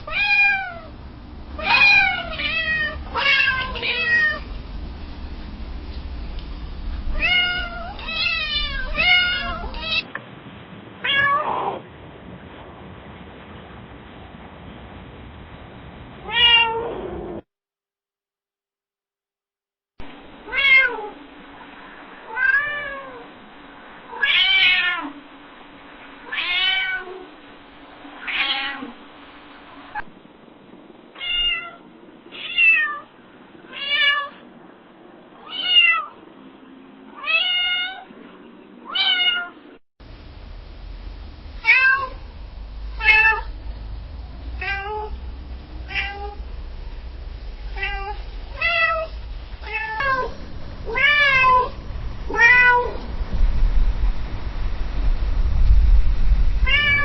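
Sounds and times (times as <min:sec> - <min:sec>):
cat meowing: 0:00.0 - 0:00.9, 0:01.6 - 0:04.4, 0:07.1 - 0:10.1, 0:11.0 - 0:11.8, 0:16.2 - 0:17.4, 0:20.5 - 0:21.2, 0:24.1 - 0:25.2, 0:26.3 - 0:27.2, 0:28.2 - 0:29.0, 0:31.2 - 0:33.1, 0:33.7 - 0:34.4, 0:35.4 - 0:36.2, 0:37.2 - 0:38.1, 0:38.8 - 0:39.6, 0:41.6 - 0:42.2, 0:43.0 - 0:43.5, 0:44.6 - 0:45.2, 0:45.9 - 0:46.4, 0:47.8 - 0:53.0, 0:56.6 - 0:57.0
low steady hum: 0:00.0 - 0:11.1, 0:39.6 - 0:57.0.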